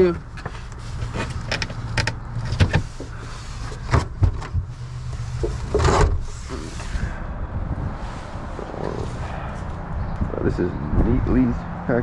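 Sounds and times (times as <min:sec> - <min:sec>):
gear knocking and rustling: 0:00.2 - 0:06.9.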